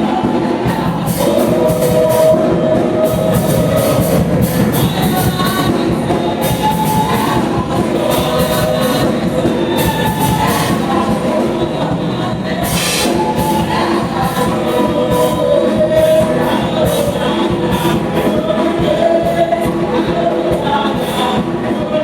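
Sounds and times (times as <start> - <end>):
live church praise band singing: 0.0 - 22.0.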